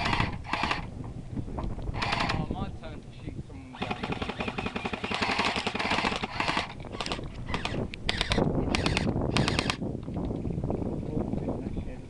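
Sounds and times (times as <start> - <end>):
airsoft guns firing full-auto: 3.8 - 9.8.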